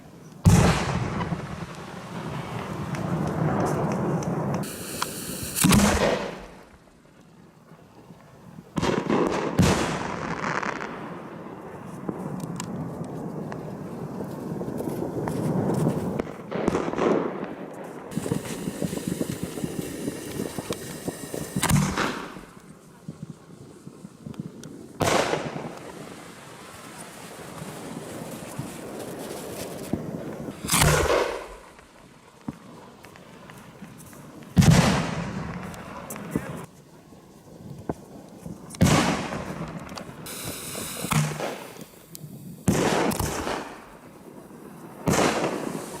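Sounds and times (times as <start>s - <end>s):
fireworks crackling: 0.0s - 46.0s
loud firework bangs: 0.4s - 6.7s, 8.8s - 11.4s, 15.2s - 22.6s, 25.0s - 26.7s, 29.6s - 31.9s, 34.5s - 36.7s, 38.8s - 46.0s
high hiss: 4.6s - 6.8s, 18.1s - 22.8s, 39.2s - 46.0s.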